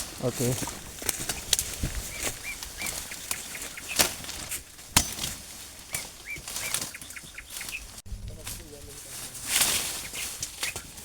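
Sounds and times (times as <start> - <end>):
bird chirping: 0.0 - 4.8, 5.8 - 8.3, 9.8 - 11.0.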